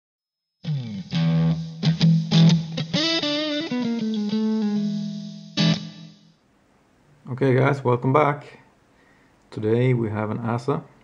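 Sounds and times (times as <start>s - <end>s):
electric guitar music: 0.6s - 6.4s.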